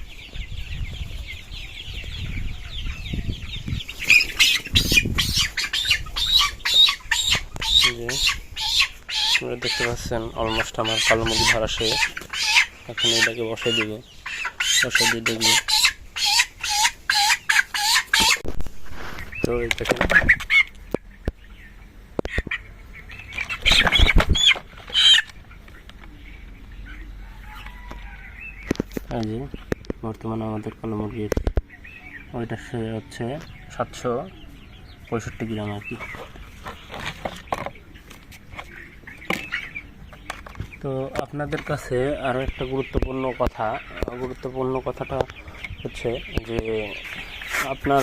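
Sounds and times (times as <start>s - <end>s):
chickens calling: 0.0s - 48.0s
chicken squawking rapidly: 3.8s - 18.4s, 20.0s - 20.7s, 23.4s - 25.3s
wings flapping: 23.4s - 25.3s.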